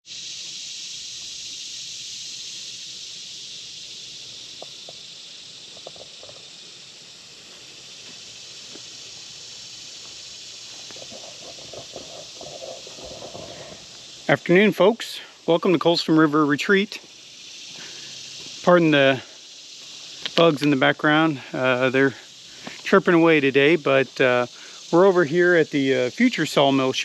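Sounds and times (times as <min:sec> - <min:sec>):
insects chirping: 0:00.0 - 0:27.0
faint ticks and rustles: 0:03.9 - 0:14.7, 0:16.7 - 0:27.0.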